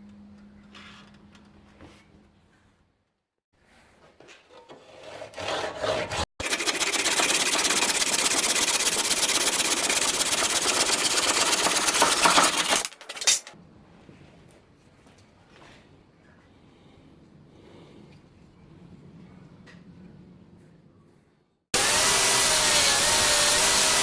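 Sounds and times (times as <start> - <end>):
power tool cutting wood: 6.4 - 12.9, 21.8 - 24.0.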